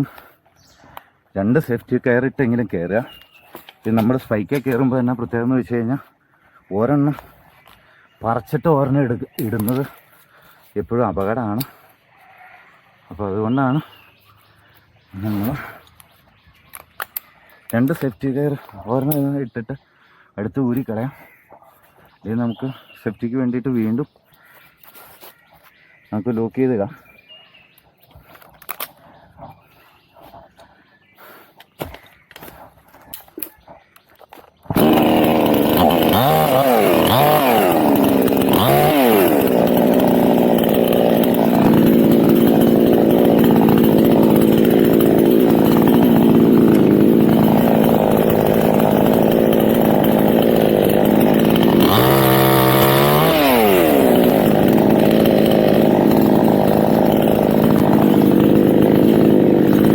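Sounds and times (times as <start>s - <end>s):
chainsaw revving: 3.8s - 6.1s, 9.2s - 10.0s, 15.1s - 16.1s, 34.6s - 59.9s.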